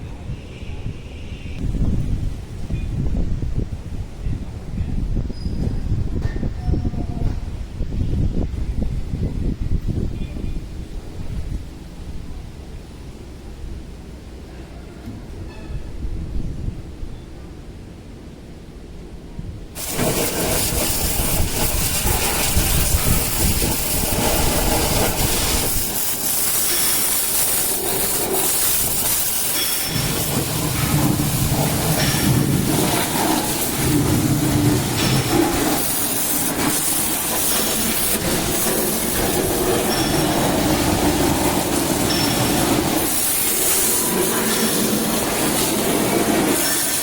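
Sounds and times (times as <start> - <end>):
heavy machinery hissing: 19.8 - 47.0.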